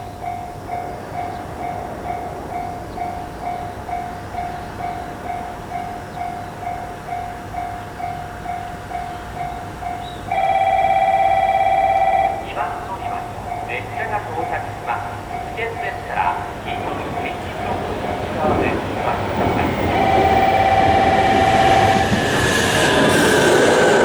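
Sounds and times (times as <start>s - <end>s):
railroad crossing bell ringing: 0.0s - 24.0s
loud steady tone: 10.3s - 24.0s.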